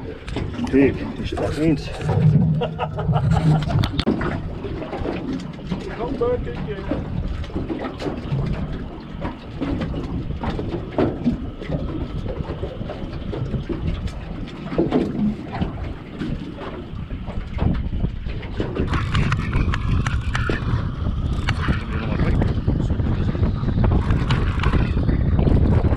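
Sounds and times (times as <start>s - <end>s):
wind buffeting microphone: 0.0s - 25.9s.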